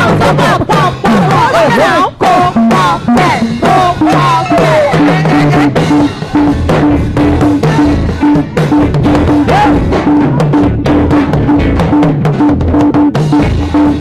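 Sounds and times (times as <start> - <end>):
person singing: 0.0 - 8.8, 9.4 - 10.4
drum kit beat: 0.0 - 14.0
repeating low riff: 0.0 - 14.0.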